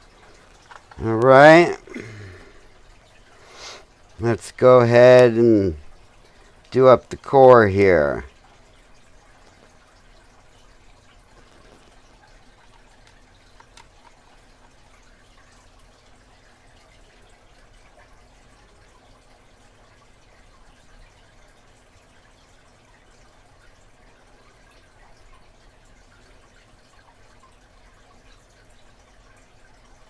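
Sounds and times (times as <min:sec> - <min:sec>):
small metal clicks and ticks: 0:00.4 - 0:01.0, 0:11.3 - 0:14.8
steady hiss: 0:03.4 - 0:05.8.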